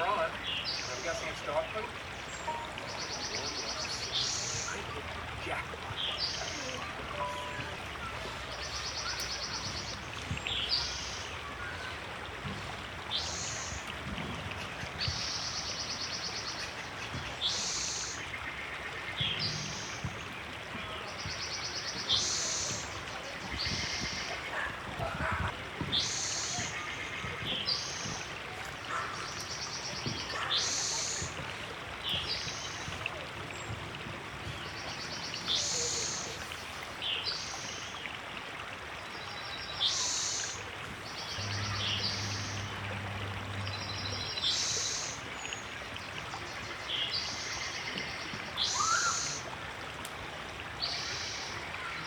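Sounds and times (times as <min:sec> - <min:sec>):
river water flowing: 0:00.0 - 0:52.0
bird calling with falling notes: 0:06.2 - 0:10.0, 0:48.6 - 0:49.5.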